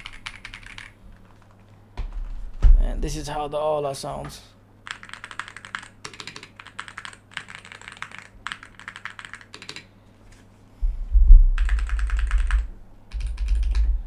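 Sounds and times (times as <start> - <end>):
loud low rumble: 2.4 - 3.4, 10.8 - 14.0.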